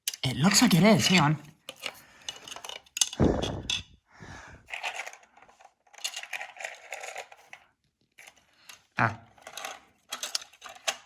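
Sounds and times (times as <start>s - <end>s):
toy train track clicking: 0.0s - 3.8s, 4.7s - 7.6s, 8.2s - 11.0s.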